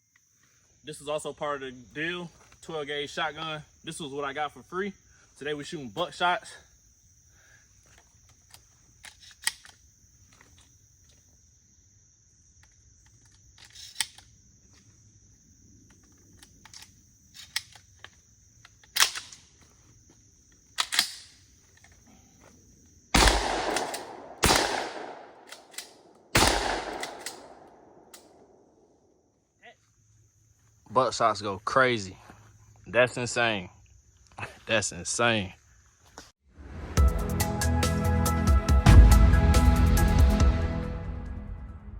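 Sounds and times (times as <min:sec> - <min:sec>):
shotgun blasts with echo: 0:23.2 - 0:25.7, 0:26.3 - 0:28.5
sharp clicks: 0:23.2 - 0:28.4.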